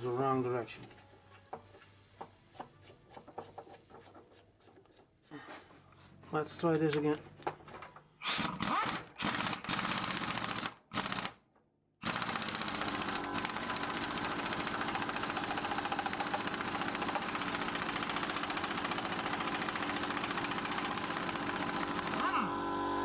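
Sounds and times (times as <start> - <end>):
impact wrench hammering: 12.6 - 22.2.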